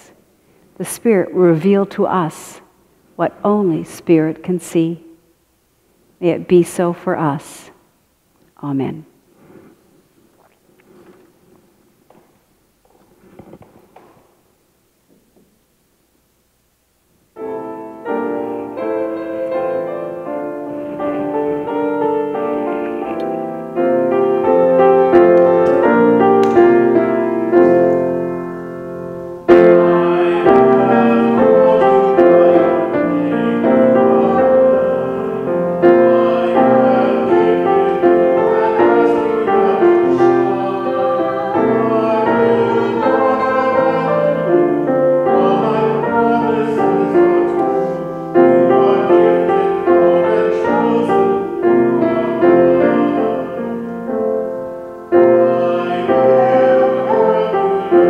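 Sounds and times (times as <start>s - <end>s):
slow piano piece: 17.3s - 58.0s.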